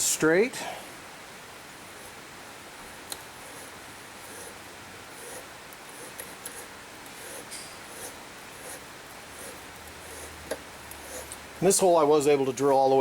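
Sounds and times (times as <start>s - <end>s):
cutting tool scraping metal: 2.9s - 11.4s.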